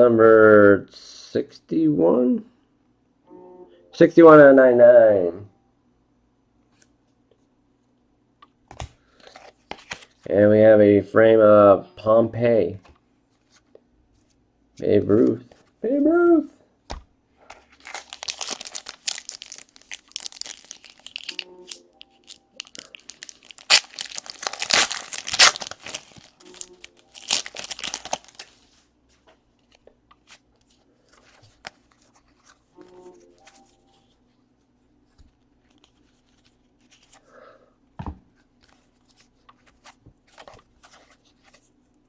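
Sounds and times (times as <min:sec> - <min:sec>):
wrapper tearing and crinkling: 0:17.7 - 0:28.6.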